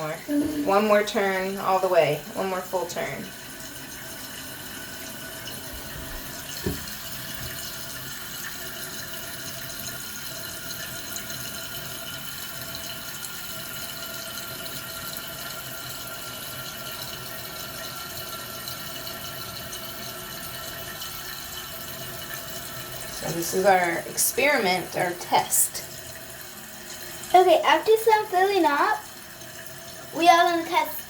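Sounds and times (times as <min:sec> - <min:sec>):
toilet tank refilling hiss: 0:00.0 - 0:31.0
knock: 0:06.0 - 0:07.6.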